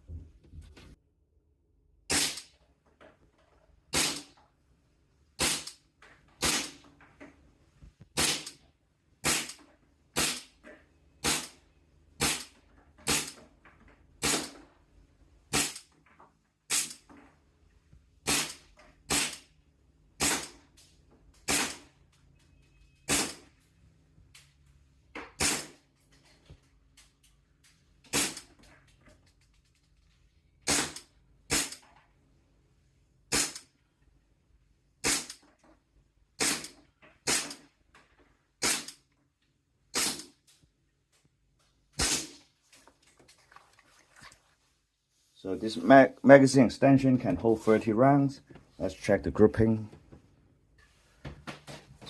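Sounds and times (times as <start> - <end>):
airsoft pistol shots: 2.1 - 2.5, 3.9 - 4.3, 5.4 - 5.8, 6.4 - 6.8, 8.2 - 8.6, 9.2 - 9.6, 10.2 - 10.5, 11.2 - 11.6, 12.2 - 12.5, 13.1 - 13.4, 14.2 - 14.6, 15.5 - 15.8, 18.2 - 19.4, 20.2 - 20.6, 21.5 - 21.8, 23.1 - 23.5, 25.4 - 25.8, 28.1 - 28.4, 30.6 - 31.8, 33.3 - 33.6, 35.0 - 35.4, 36.4 - 37.6, 38.6 - 39.0, 39.9 - 40.3, 42.0 - 42.4.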